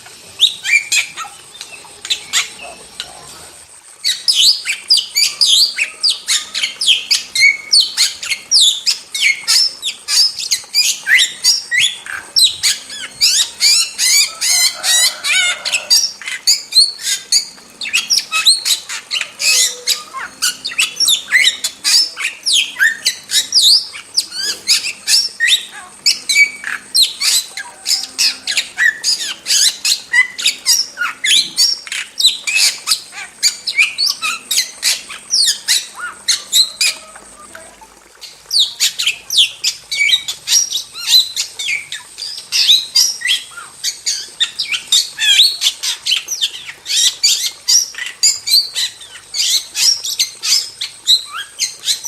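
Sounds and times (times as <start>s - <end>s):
starling whistles and squawks: 0.0s - 52.0s.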